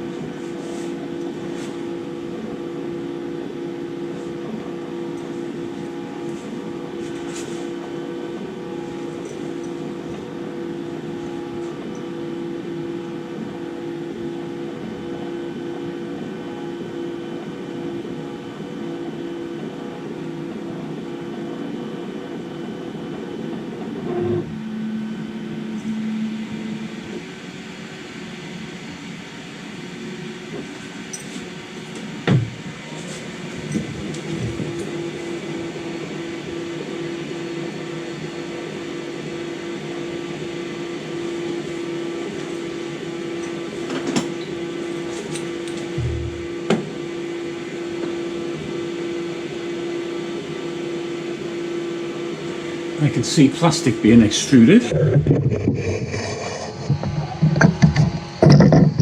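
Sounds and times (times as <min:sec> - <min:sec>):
fan noise: 0:00.0 - 0:59.0
stepper motors whining: 0:23.0 - 0:28.2, 0:41.0 - 0:47.0, 0:53.0 - 0:59.0.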